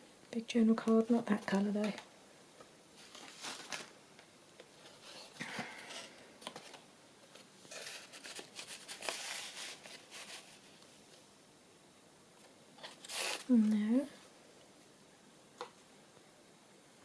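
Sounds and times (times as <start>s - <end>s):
paper cards rustling and sliding: 3.0s - 3.9s, 4.7s - 10.9s, 12.8s - 13.6s.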